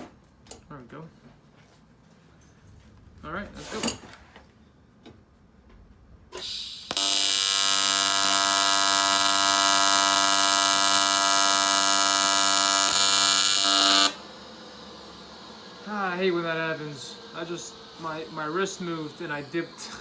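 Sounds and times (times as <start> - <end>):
welding arc buzzing: 6.4 - 20.0.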